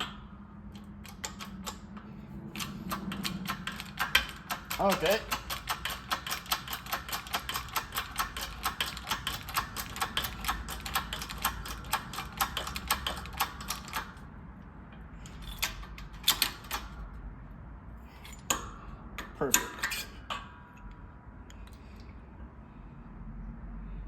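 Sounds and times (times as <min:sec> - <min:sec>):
rapid ratcheting clicks: 0:00.0 - 0:14.3, 0:15.2 - 0:17.1.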